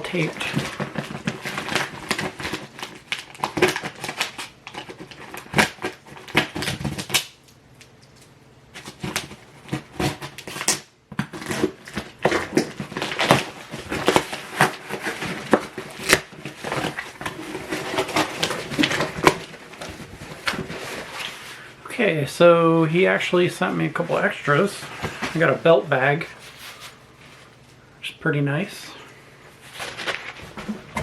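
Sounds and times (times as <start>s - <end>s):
package tape ripping and crackling: 8.8s - 20.7s.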